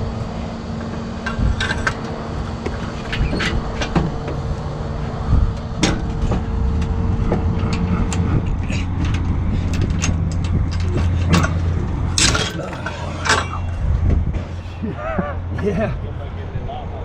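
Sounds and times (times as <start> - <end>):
diesel engine running: 0.0 - 17.0
metallic clanks and knocks: 1.2 - 14.7.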